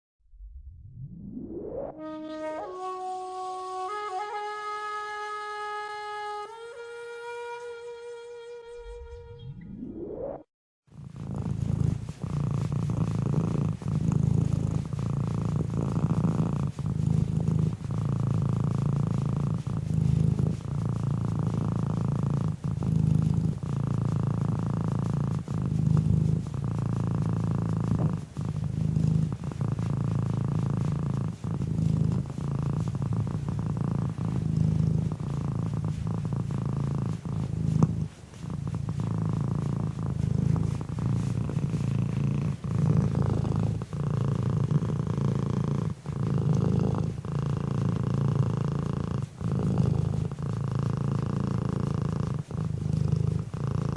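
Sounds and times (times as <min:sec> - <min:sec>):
cat purring: 0:10.9 - 0:53.9.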